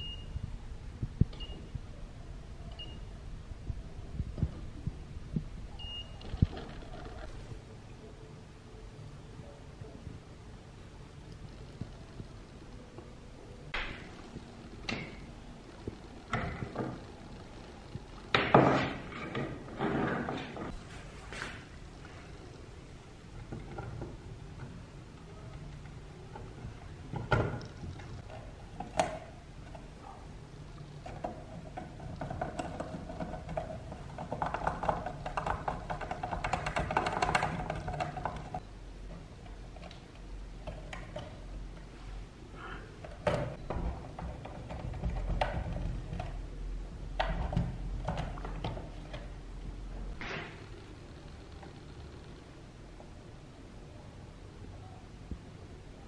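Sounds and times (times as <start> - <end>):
objects knocking and clattering: 6.2 - 7.5, 14.8 - 17.1, 18.3 - 20.8, 31.0 - 38.6, 43.0 - 49.4.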